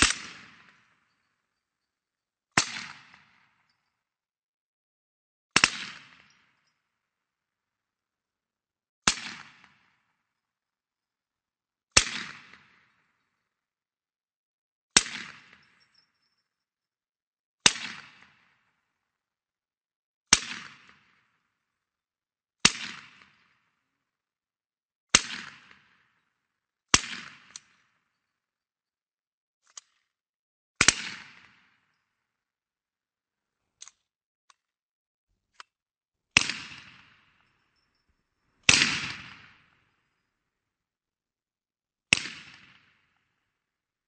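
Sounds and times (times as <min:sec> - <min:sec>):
gunshots echoing: 0:38.6 - 0:39.8
submachine gun shots: 0:38.7 - 0:39.5.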